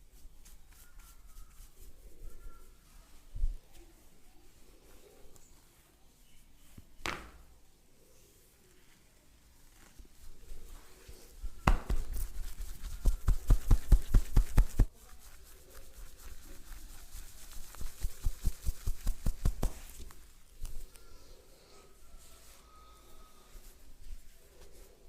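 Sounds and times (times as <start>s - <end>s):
rhythmic hand slaps on head: 11.6s - 14.9s, 18.0s - 20.0s.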